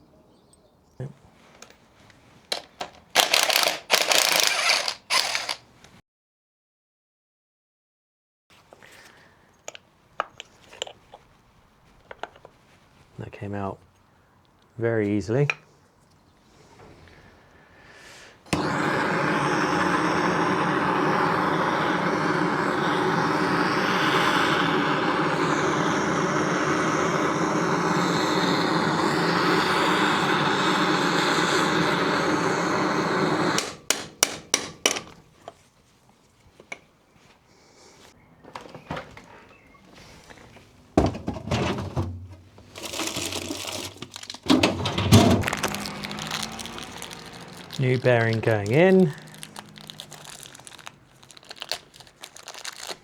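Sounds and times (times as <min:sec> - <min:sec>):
workshop tool handling noise: 0:01.4 - 0:06.0, 0:08.6 - 0:13.0, 0:33.6 - 0:37.4, 0:38.4 - 0:53.0
metal parts clattering: 0:02.5 - 0:05.7
motor running steadily: 0:03.2 - 0:05.6, 0:18.4 - 0:33.7, 0:45.4 - 0:51.0.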